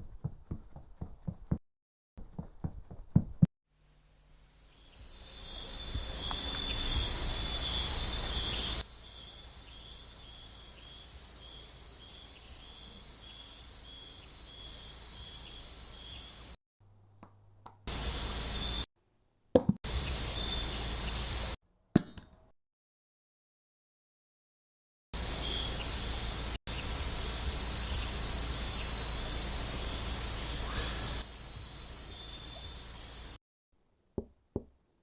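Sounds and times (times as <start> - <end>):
insects chirring: 4.4 - 16.6, 17.9 - 18.8, 19.9 - 21.6, 25.2 - 33.4.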